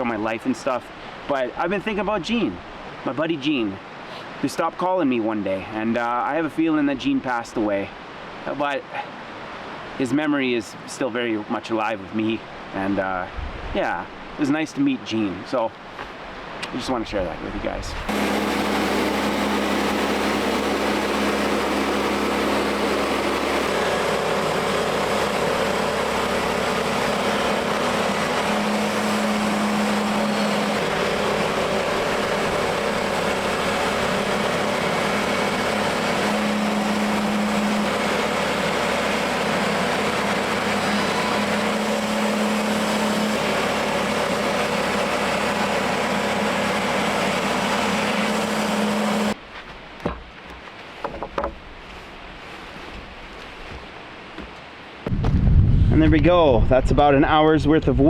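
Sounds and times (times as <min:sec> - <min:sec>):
petrol engine under load: 0:18.1 - 0:49.4.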